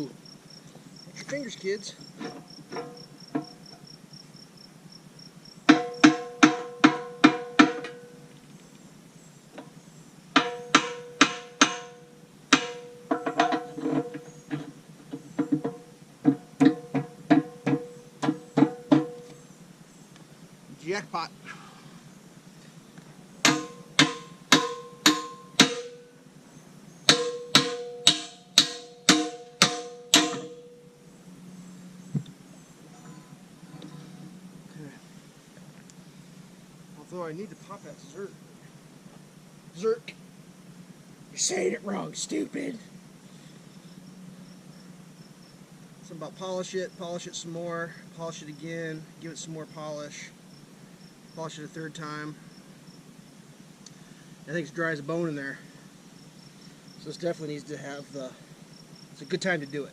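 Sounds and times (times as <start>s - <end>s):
hammer striking steel pin: 5.7s - 8.1s, 10.4s - 14.6s, 23.4s - 26.1s, 27.1s - 30.9s
hammer ringing on steel pin: 23.5s - 26.1s, 27.1s - 30.9s.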